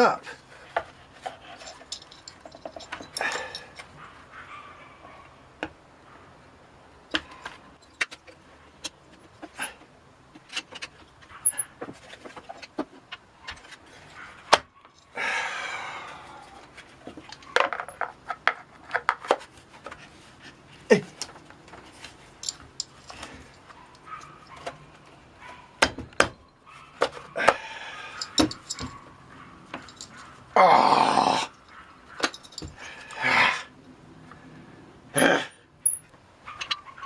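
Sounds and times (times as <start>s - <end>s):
tools clicking and clinking: 1.3s - 3.9s, 22.0s - 29.0s, 29.7s - 30.5s, 31.5s - 33.2s, 35.8s - 36.9s.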